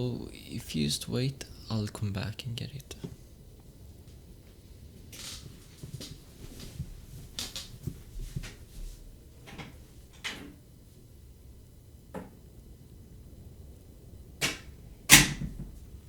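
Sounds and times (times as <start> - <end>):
soft knocks and rustles: 4.1 - 10.6
door handling: 9.4 - 10.6.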